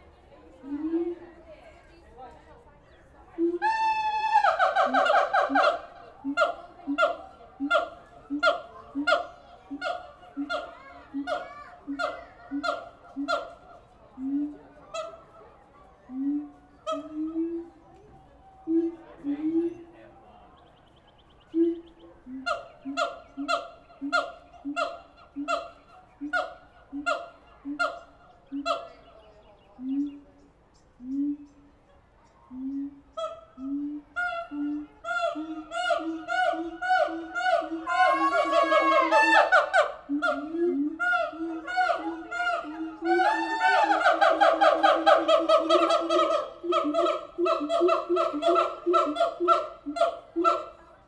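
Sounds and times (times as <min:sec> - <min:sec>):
gibbons calling with booms and barks: 0:34.2 - 0:50.9.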